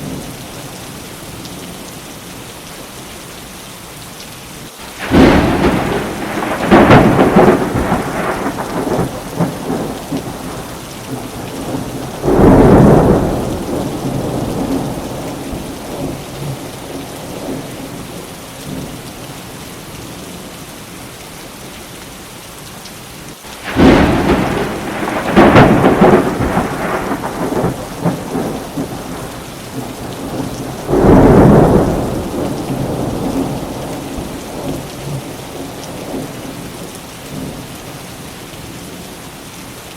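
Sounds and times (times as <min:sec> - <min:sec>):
steady rain: 0:00.0 - 0:39.9
thunder claps and rumbles: 0:05.0 - 0:19.0, 0:23.6 - 0:37.7.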